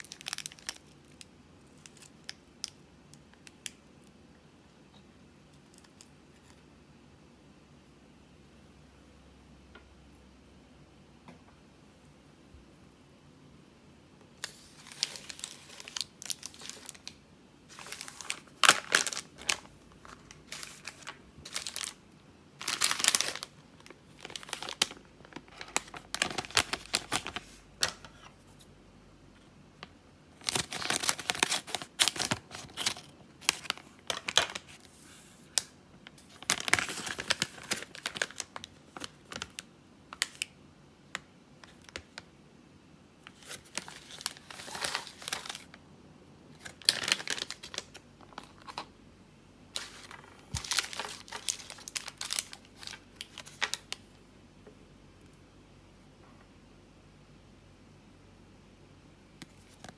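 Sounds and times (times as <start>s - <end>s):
candy packaging crinkling: 0.0s - 3.8s, 14.4s - 28.7s, 30.3s - 40.6s, 43.2s - 45.8s, 46.5s - 48.9s, 49.7s - 54.2s.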